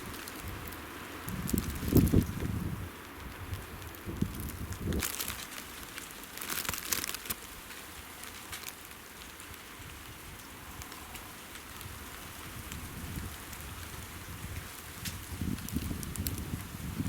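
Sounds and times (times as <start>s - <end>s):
wind-driven snow hissing: 0.0s - 5.6s, 9.8s - 17.0s
crackling: 0.0s - 17.0s.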